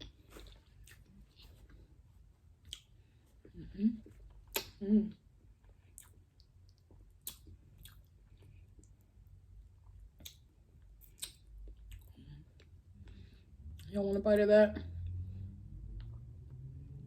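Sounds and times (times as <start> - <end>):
close-up chewing: 0.0 - 2.0, 5.6 - 9.1
wet mouth clicks and smacks: 4.4 - 4.8, 6.0 - 8.0, 11.0 - 12.1.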